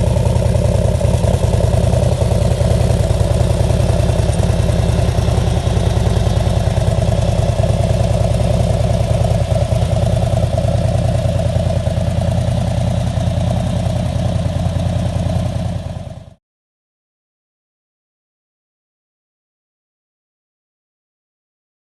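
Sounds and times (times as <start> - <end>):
motorcycle engine idling: 0.0 - 16.4.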